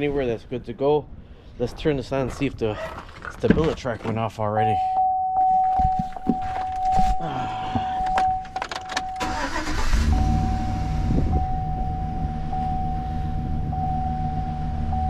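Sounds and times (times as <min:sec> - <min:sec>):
warning chime tone: 0:04.6 - 0:15.0
starter cranking: 0:08.7 - 0:10.0
engine idling: 0:09.2 - 0:15.0.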